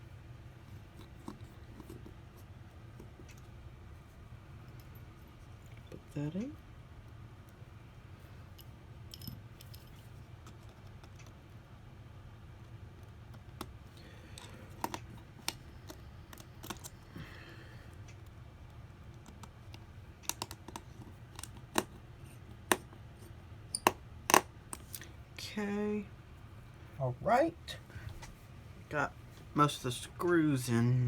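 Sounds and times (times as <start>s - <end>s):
faint low hum: 0.0s - 31.0s
small tools clicking on phone: 19.1s - 23.0s.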